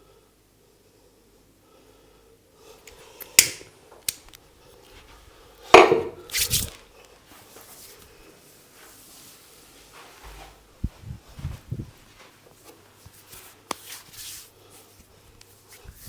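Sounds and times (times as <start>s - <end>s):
hands striking head: 5.8s - 6.2s.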